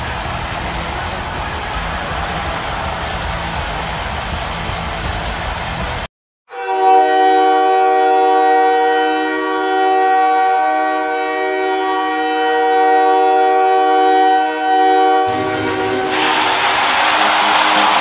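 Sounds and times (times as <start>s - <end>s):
hockey goal horn: 6.5s - 16.4s
loud wash of noise: 15.3s - 18.0s.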